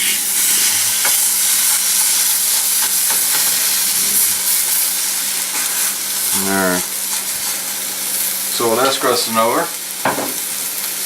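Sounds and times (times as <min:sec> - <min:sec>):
chicken sizzling in a hot pan: 0:00.0 - 0:11.0.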